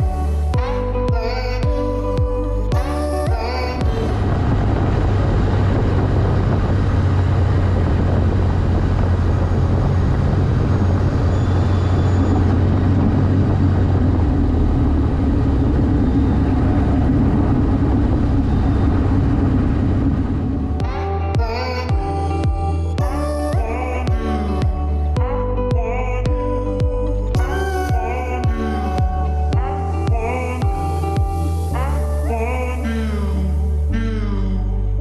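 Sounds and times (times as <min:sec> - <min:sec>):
aircraft engine drone: 0:00.0 - 0:25.6
higher hum: 0:00.0 - 0:35.0.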